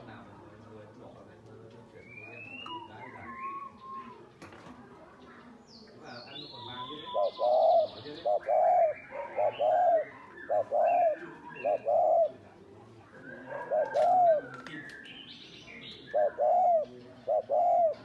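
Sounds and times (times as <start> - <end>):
small birds chirping: 0.0 - 18.0
dove cooing: 6.5 - 14.8, 15.8 - 18.0.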